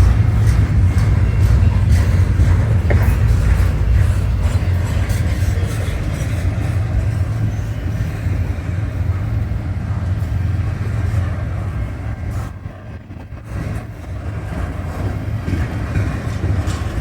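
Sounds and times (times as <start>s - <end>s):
freight train wheels rumbling: 0.0s - 17.0s.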